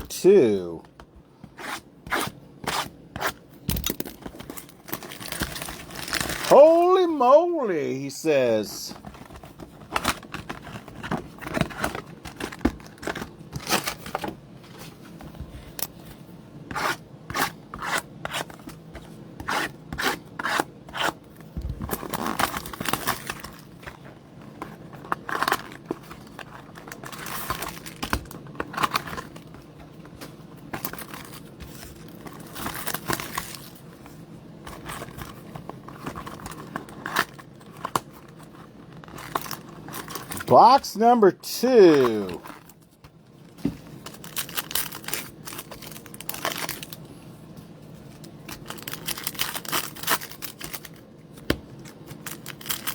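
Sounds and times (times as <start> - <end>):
foil wrappers tearing and crinkling: 3.8 - 6.5, 9.9 - 14.2, 21.9 - 23.8, 25.0 - 29.4, 32.0 - 33.8, 38.9 - 40.4, 44.0 - 47.0, 48.4 - 51.0, 52.2 - 52.9.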